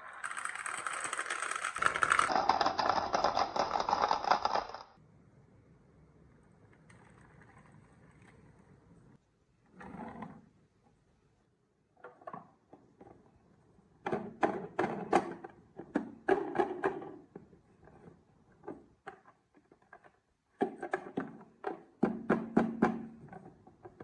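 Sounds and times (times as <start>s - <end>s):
marbles clacking on wooden track: 0.0s - 4.9s.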